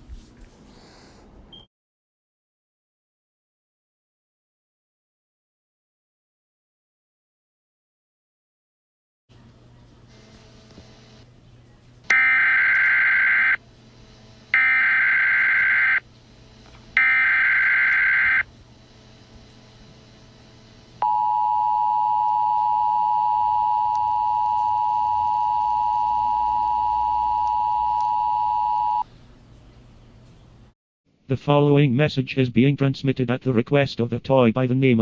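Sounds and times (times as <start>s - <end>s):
two-tone attention signal: 12.1s - 13.6s, 14.6s - 16.0s, 17.0s - 18.4s, 21.0s - 29.0s
digital data tone bursts: 14.6s - 16.0s, 17.0s - 18.4s.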